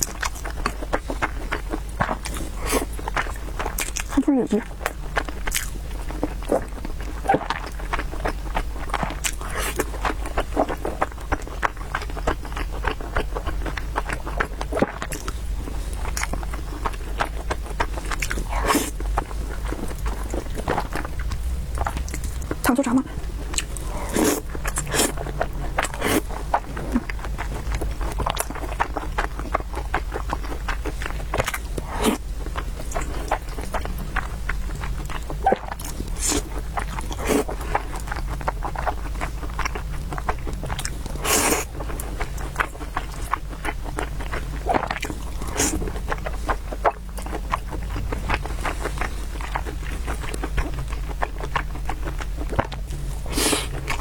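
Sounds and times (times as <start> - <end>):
person chewing: 0.0 - 54.0
slurping: 18.0 - 27.2, 41.2 - 41.7, 53.3 - 54.0
low hum: 18.5 - 28.2.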